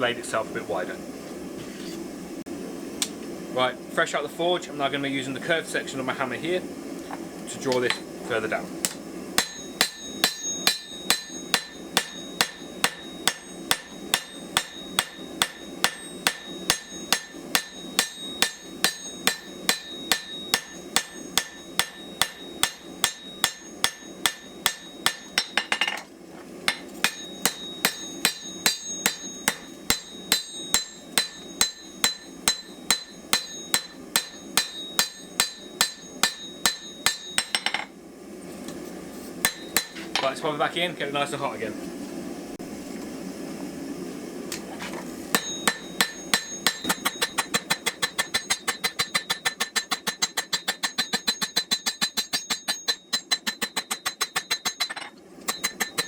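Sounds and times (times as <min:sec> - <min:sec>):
hammer striking steel on anvil: 0:07.7 - 0:08.1, 0:08.8 - 0:26.1, 0:26.7 - 0:37.9, 0:39.4 - 0:40.4, 0:45.3 - 0:56.0
anvil ringing: 0:09.4 - 0:26.0, 0:26.7 - 0:37.9, 0:39.5 - 0:40.4, 0:45.3 - 0:56.0.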